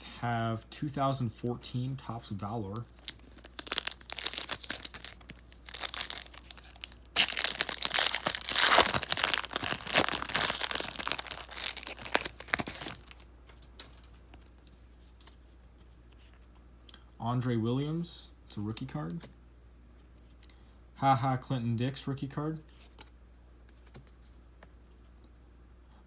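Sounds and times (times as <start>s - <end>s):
wrapper tearing and crinkling: 2.8s - 13.2s.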